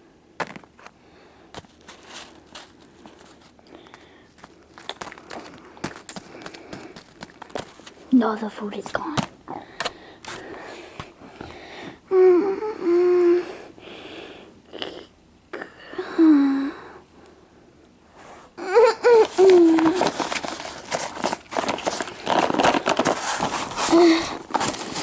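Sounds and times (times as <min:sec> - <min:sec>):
rustling and clattering: 0:04.3 - 0:08.1, 0:19.3 - 0:25.0.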